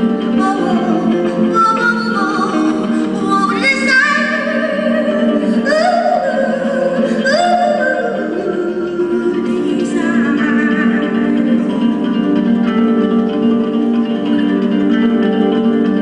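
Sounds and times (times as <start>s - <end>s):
woman singing long sliding notes: 0.0s - 12.1s
plucked harp: 0.0s - 16.0s.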